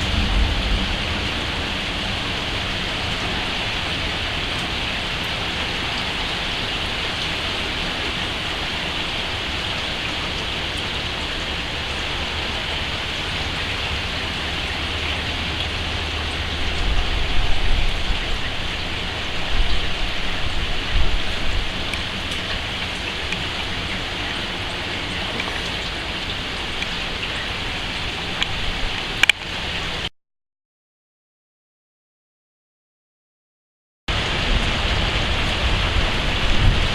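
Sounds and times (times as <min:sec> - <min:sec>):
low rumbling surges: 0:00.0 - 0:29.8
steady rain hiss: 0:00.0 - 0:30.1, 0:34.1 - 0:36.9
click: 0:29.2 - 0:29.4.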